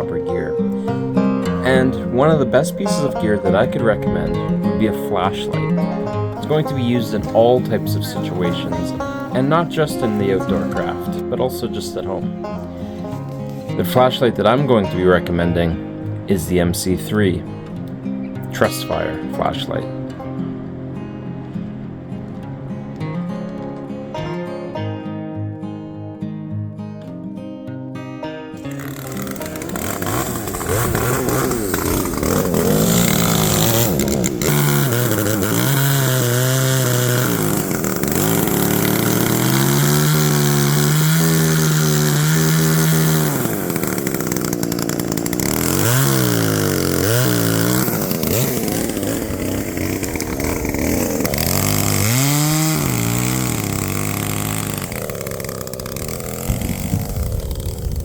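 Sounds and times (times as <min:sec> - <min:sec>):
chainsaw cutting wood: 0:00.0 - 0:25.0, 0:28.6 - 0:58.0.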